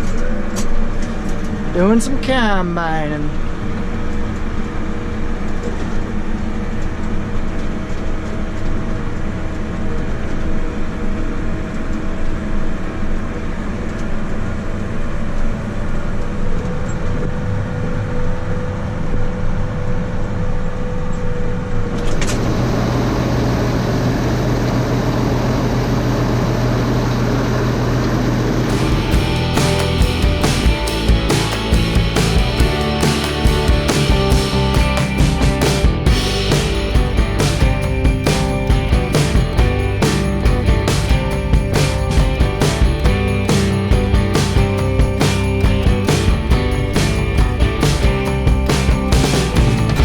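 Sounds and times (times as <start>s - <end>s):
rough machine noise with low hum: 0.0s - 50.0s
tractor engine drone: 15.5s - 50.0s.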